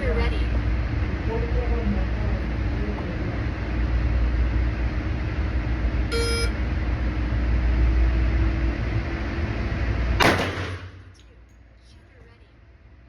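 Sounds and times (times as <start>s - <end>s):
steady low rumble: 0.0s - 13.0s
short electronic beep: 6.1s - 6.6s.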